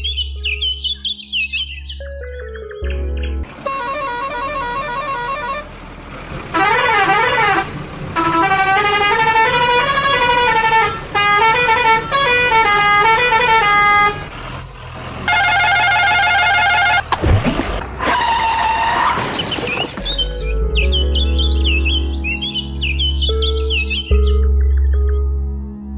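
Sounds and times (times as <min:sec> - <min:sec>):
buzzy horn blast: 0:03.6 - 0:05.7, 0:06.5 - 0:14.3, 0:15.3 - 0:17.2
electronic horn tune: 0:03.6 - 0:05.7, 0:06.6 - 0:07.6, 0:15.3 - 0:17.2.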